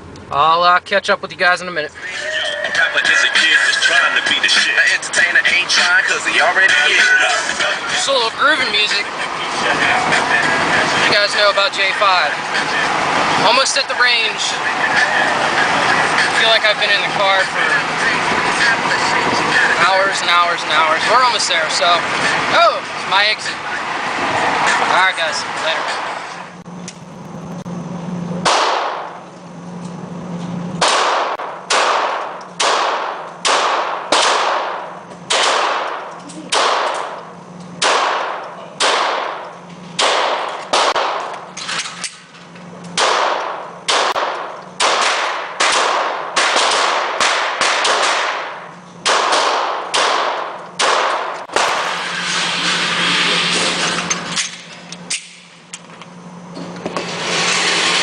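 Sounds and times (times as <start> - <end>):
steady low hum: 0.0 - 41.6, 49.7 - 53.9
gunshots echoing: 28.4 - 29.2, 30.8 - 37.0, 49.1 - 52.6.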